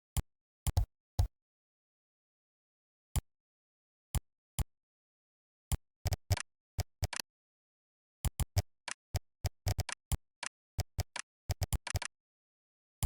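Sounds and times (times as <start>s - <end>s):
keyboard key clicks: 11.0s - 12.1s.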